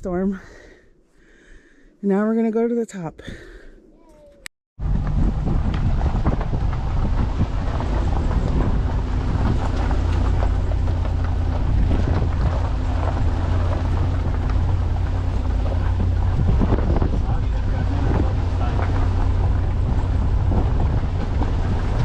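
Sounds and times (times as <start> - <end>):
rattles and bumps: 4.8 - 22.0
vehicle engine running: 4.8 - 22.0
wind buffeting microphone: 4.8 - 22.0.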